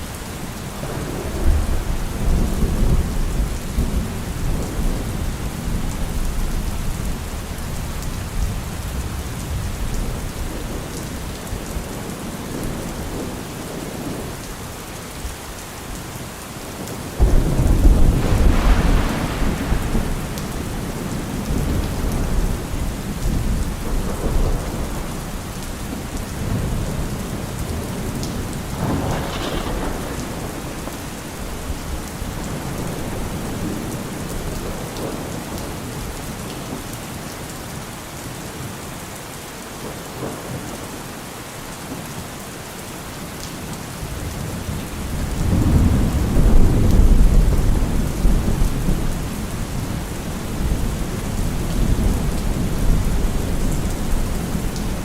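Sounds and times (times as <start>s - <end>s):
steady rain falling: 0.0s - 55.0s
rolling thunder: 17.0s - 36.1s, 44.1s - 55.0s.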